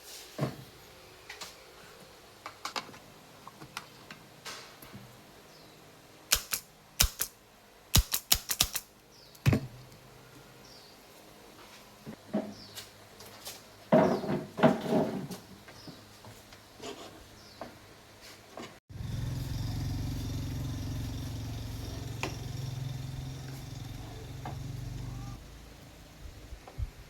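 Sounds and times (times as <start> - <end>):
amplifier low hum: 18.9 - 26.9.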